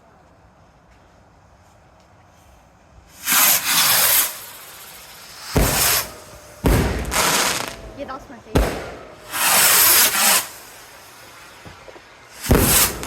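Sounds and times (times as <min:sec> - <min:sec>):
fireworks bangs: 0:03.1 - 0:13.0
fireworks hissing burst: 0:03.1 - 0:13.0.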